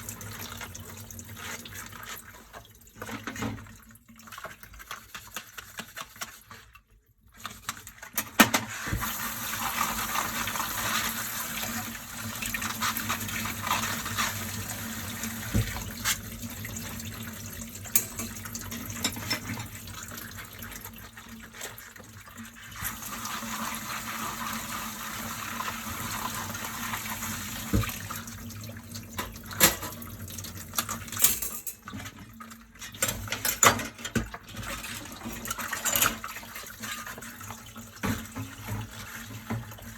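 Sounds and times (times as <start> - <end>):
tap running: 12.5 - 16.8, 25.8 - 28.2
dishes clinking: 17.9 - 19.6, 30.8 - 31.9.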